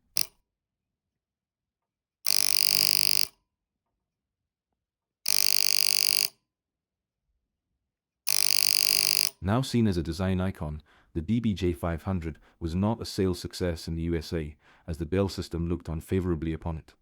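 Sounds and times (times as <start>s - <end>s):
telephone buzzer: 2.3s - 3.3s, 5.3s - 6.3s, 8.3s - 9.3s.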